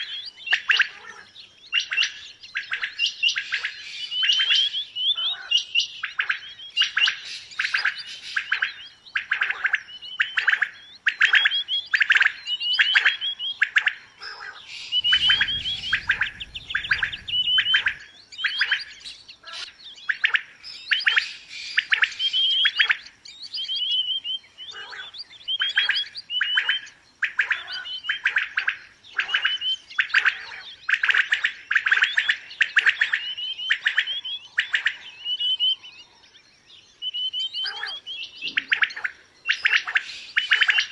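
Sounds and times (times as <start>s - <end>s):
quail calling: 0.0s - 35.9s, 37.0s - 40.9s
low rumble: 15.0s - 18.0s.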